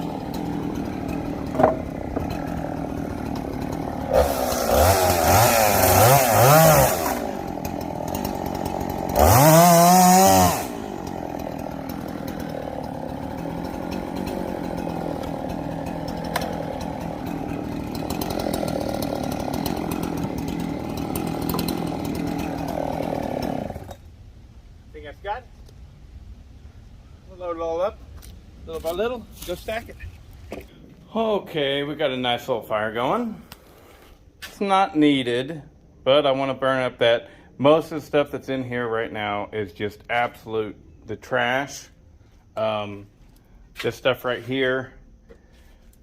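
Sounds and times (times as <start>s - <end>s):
chainsaw idling and revving: 0.0s - 24.1s.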